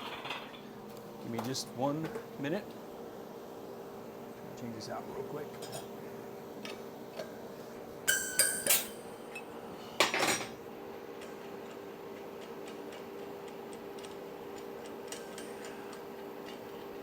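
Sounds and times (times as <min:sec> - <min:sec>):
metal clanks with ringing tone: 0:08.1 - 0:09.0.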